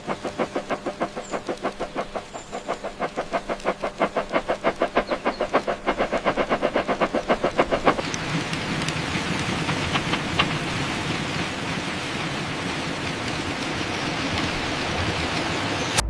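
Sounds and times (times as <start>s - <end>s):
train hiss: 0.0s - 8.4s
train clattering on track: 0.0s - 12.0s.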